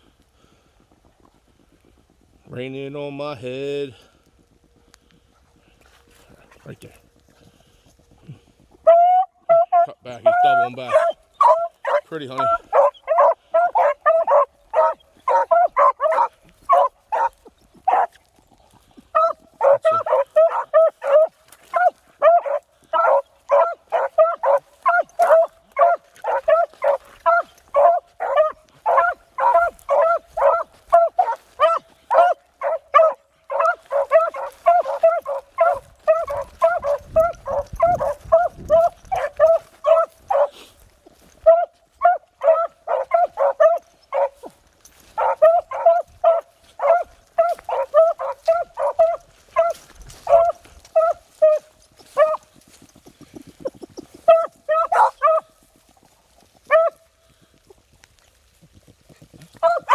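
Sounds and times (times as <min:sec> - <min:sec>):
beagles baying: 0:03.9 - 0:57.1, 0:59.5 - 0:59.9.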